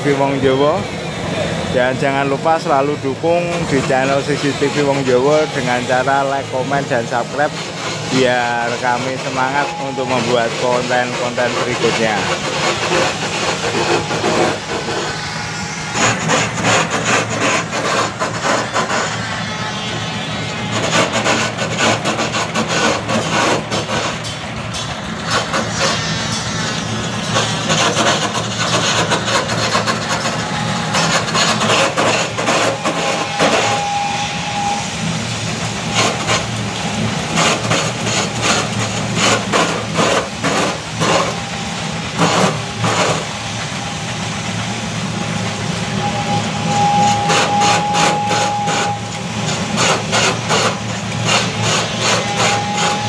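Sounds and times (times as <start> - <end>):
lathe motor humming: 2.6 - 37.3
cutter scraping spinning wood: 3.5 - 24.2, 49.6 - 53.0.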